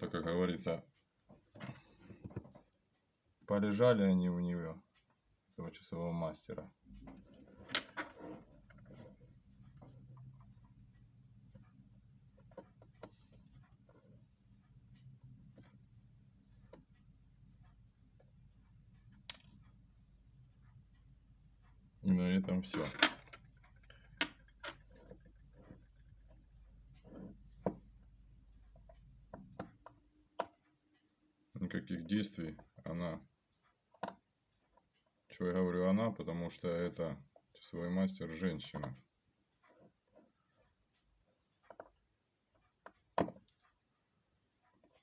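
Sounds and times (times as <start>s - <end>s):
small metallic clicks: 16.6s - 19.8s, 22.5s - 31.3s, 38.6s - 43.8s.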